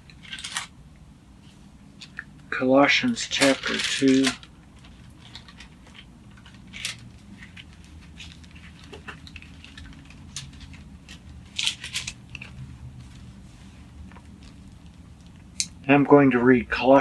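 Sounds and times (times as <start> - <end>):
thin pages rustling: 3.4 - 14.9.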